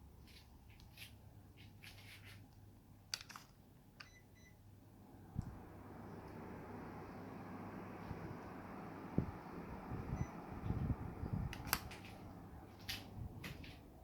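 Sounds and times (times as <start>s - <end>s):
air conditioner fan rushing air: 4.6s - 14.0s.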